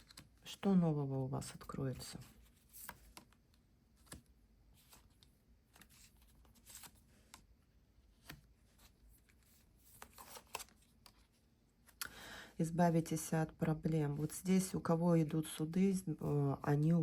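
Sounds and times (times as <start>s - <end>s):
cards rustling and tapping: 0.0s - 0.4s, 2.0s - 12.0s.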